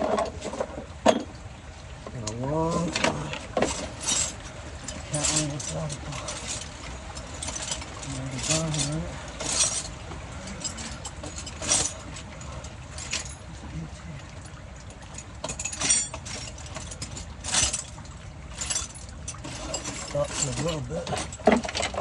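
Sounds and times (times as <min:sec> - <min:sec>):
tools clinking against metal: 0:02.7 - 0:13.5, 0:15.2 - 0:22.0.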